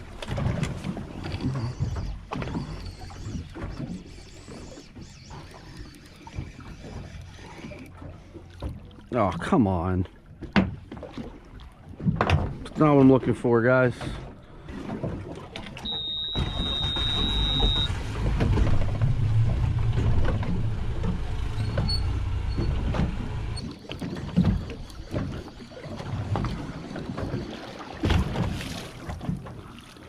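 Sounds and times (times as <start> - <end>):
boat low rumble: 0.0 - 30.0
high steady tone: 15.8 - 17.9.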